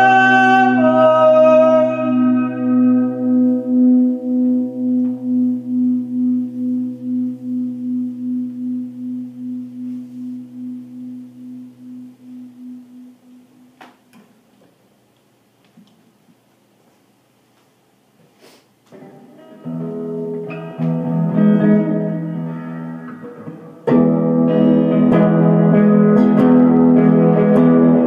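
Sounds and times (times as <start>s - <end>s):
held musical note ringing: 0.0s - 13.8s.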